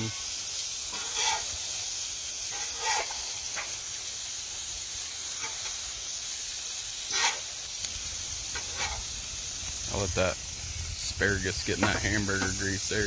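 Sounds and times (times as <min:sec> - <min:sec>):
food sizzling on a griddle: 0:00.0 - 0:13.0
spatula scraping on steel: 0:00.9 - 0:01.6, 0:02.5 - 0:03.7, 0:07.1 - 0:07.5, 0:08.5 - 0:09.1.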